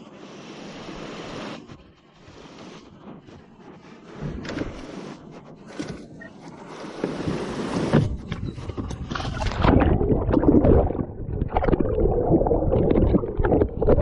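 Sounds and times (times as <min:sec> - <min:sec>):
water splashing around a canoe: 0:09.0 - 0:14.0.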